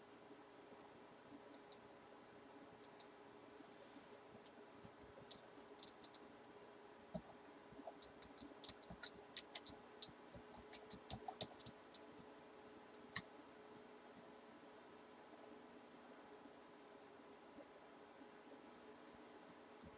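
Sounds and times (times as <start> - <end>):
faint irregular clicks and taps: 1.5 - 1.8, 2.8 - 3.1, 4.4 - 12.3.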